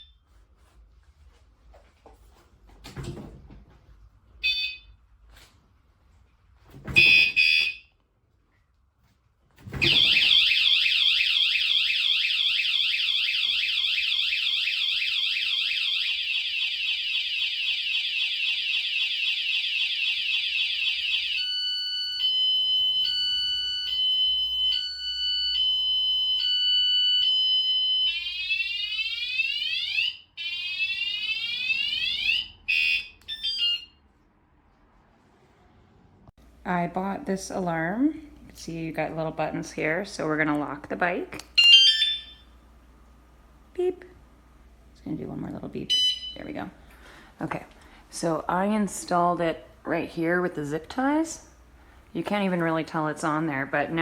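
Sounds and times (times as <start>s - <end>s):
bicycle alarm siren: 0.0s - 0.2s, 4.4s - 4.9s, 7.0s - 7.9s, 9.7s - 34.2s, 41.6s - 42.6s, 45.9s - 46.6s
alarm warning tone: 4.4s - 4.9s, 6.9s - 7.8s, 9.7s - 34.0s, 41.6s - 42.6s, 45.9s - 46.7s.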